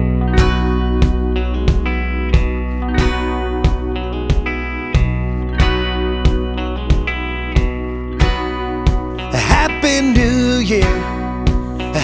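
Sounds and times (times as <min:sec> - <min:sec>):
steady beat: 0:00.0 - 0:12.0
strummed guitar: 0:00.0 - 0:12.0
person singing: 0:09.3 - 0:12.0.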